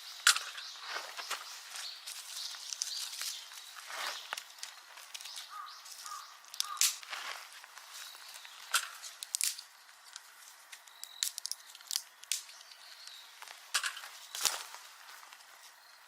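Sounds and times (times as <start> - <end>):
short bird calls: 5.4 - 7.0.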